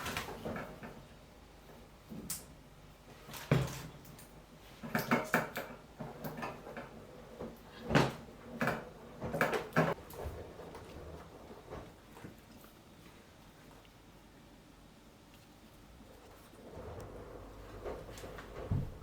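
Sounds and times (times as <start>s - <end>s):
household knocks and clunks: 4.8s - 12.4s, 16.8s - 19.0s.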